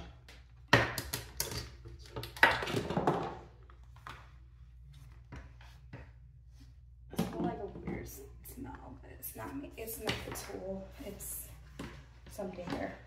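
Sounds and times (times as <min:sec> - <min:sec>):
hard objects knocking and clattering: 0:00.0 - 0:03.5.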